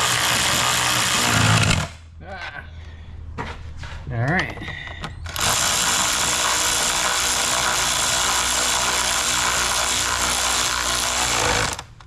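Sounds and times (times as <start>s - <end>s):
power tool driving a bolt: 0.0s - 2.0s, 5.3s - 11.9s.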